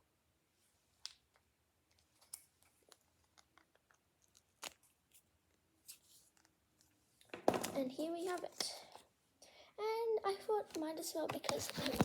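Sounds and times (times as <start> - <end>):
marker and paper clicks and taps: 10.7 - 12.0.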